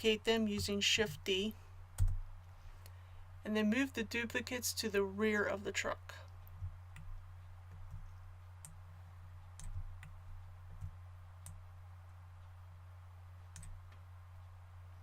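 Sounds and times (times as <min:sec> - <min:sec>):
low electrical hum: 0:00.0 - 0:15.0
computer mouse clicks: 0:13.5 - 0:14.0.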